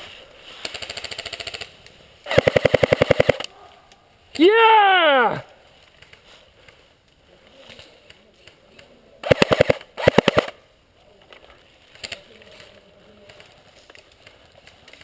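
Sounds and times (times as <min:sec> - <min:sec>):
airsoft gun full-auto bursts: 0:00.6 - 0:01.7, 0:02.3 - 0:03.4, 0:09.2 - 0:10.6.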